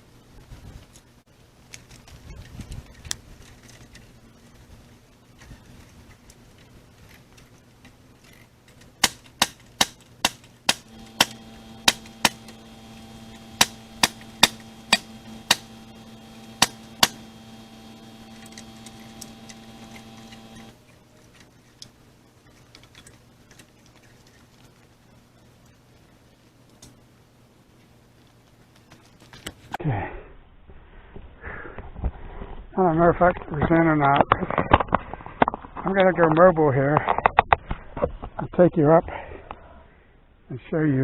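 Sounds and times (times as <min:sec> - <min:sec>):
nail gun firing: 0:09.0 - 0:20.7
steady motor hum: 0:10.7 - 0:20.8.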